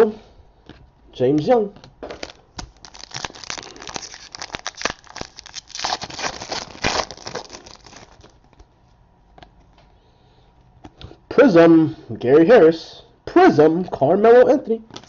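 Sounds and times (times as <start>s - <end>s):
packaging crinkling and rustling: 2.0s - 8.7s.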